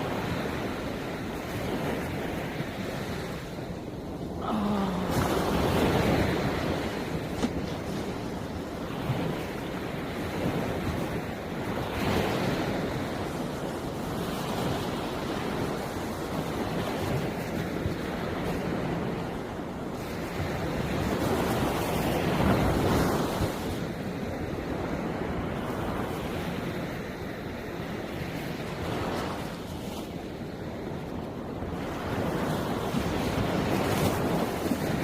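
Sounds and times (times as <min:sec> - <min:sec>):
waves breaking on shore: 0:00.0 - 0:35.0.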